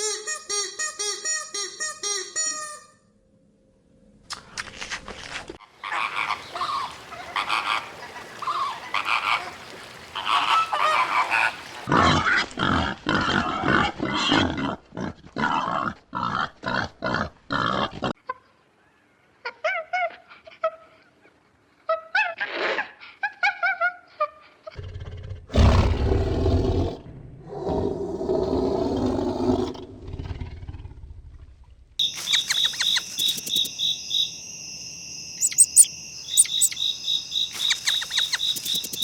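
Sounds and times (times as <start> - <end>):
farm animals calling: 5.8 - 11.9, 32.0 - 34.4, 35.4 - 39.0.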